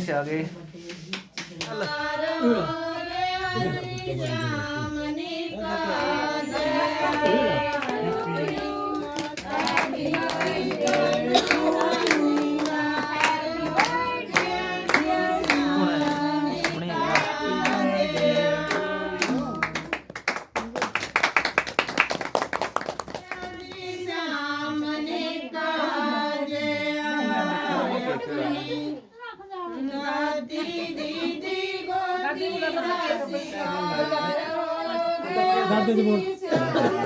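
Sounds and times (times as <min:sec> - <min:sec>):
hands clapping in rhythm: 0:00.9 - 0:02.0, 0:06.0 - 0:24.0
voices singing together: 0:01.0 - 0:20.3, 0:23.1 - 0:37.0.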